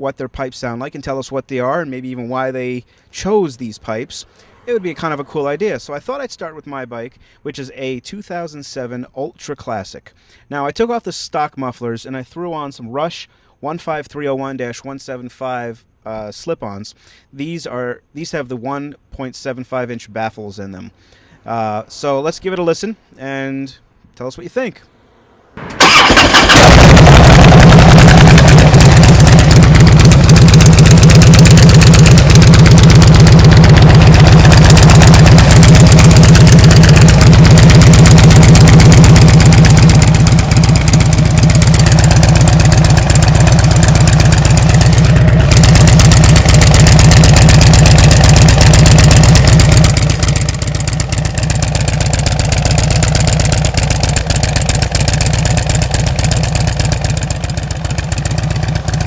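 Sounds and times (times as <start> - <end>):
motorcycle exhaust rumbling: 25.6 - 59.0.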